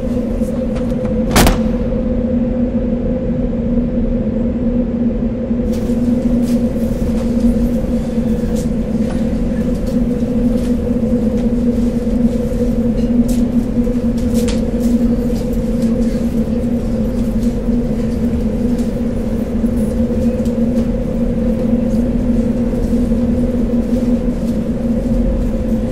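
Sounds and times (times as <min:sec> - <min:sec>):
machine humming: 0:00.0 - 0:25.9.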